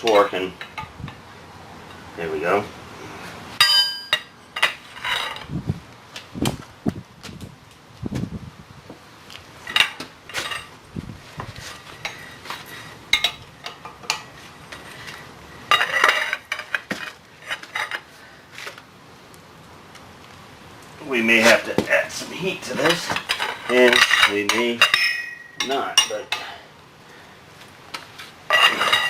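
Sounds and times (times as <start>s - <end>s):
wrench clinking on steel: 22.8s - 26.5s.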